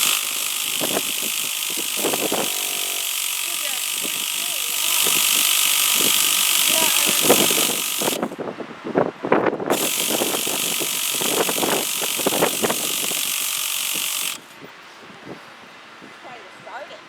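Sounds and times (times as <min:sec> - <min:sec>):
electric starter cranking engine: 0:00.0 - 0:08.4, 0:09.7 - 0:14.6.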